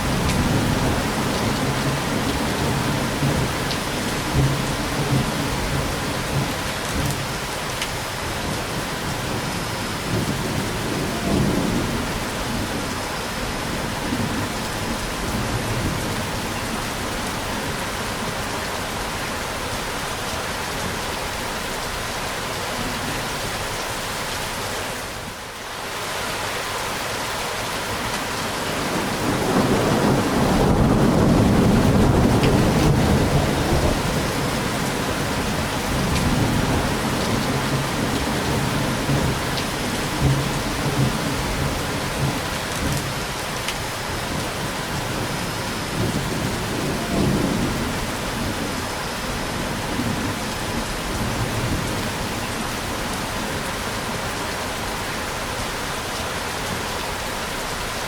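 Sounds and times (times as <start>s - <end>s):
steady rain: 0.0s - 58.0s
rolling thunder: 28.8s - 43.1s.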